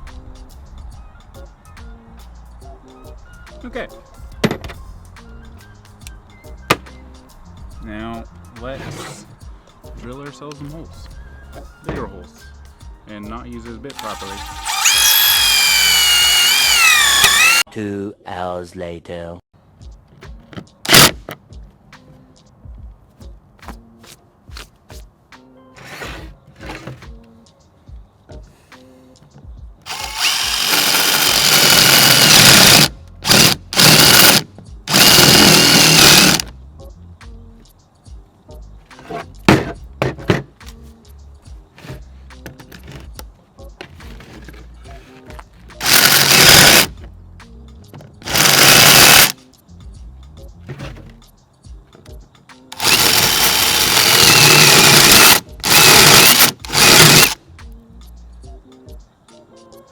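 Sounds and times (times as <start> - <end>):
cordless drill boring into wood: 13.9 - 17.6, 20.9 - 21.1, 29.9 - 36.5, 45.8 - 46.9, 48.2 - 49.4, 52.7 - 57.4.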